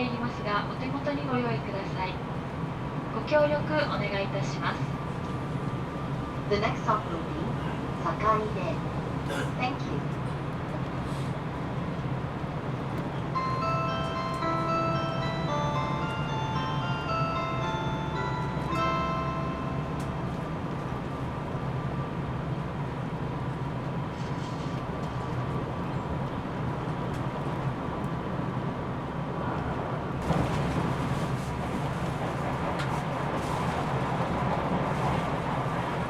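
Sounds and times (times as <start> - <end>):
train cabin running hum: 0.0 - 36.0
announcement chime: 13.4 - 20.5.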